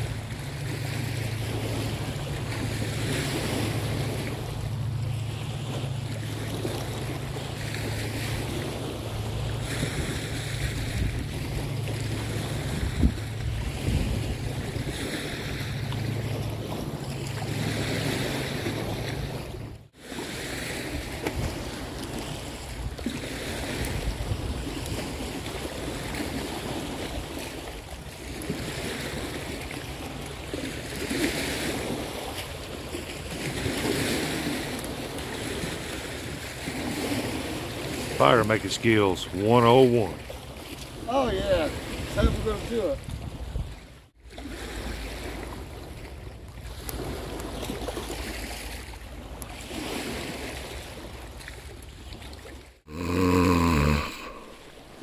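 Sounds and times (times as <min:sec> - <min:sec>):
wind buffeting microphone: 0:00.0 - 0:19.7, 0:20.9 - 0:27.4, 0:41.3 - 0:44.0
river water washing: 0:00.0 - 0:55.0.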